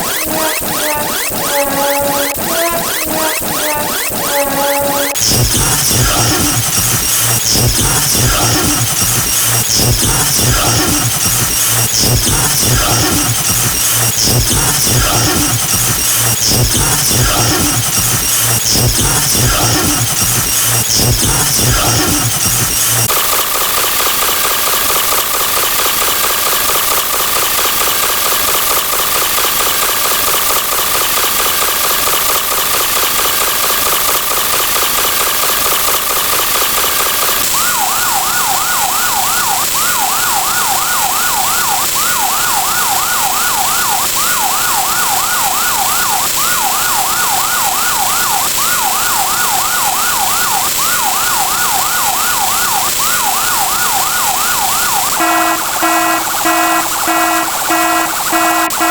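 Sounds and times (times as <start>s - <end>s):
steady high tone: 0.0s - 11.3s, 54.8s - 58.9s
ambulance siren: 0.0s - 23.2s, 37.4s - 58.9s.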